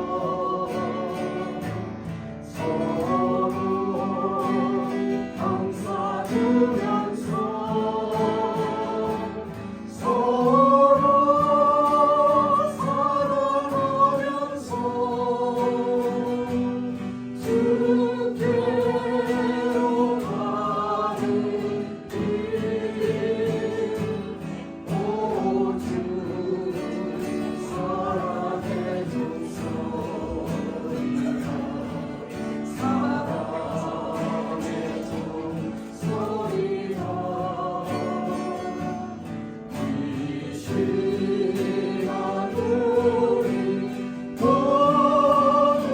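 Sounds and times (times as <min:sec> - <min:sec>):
acoustic guitar: 0:00.0 - 0:45.9
vocal ensemble singing a hymn: 0:00.0 - 0:45.9.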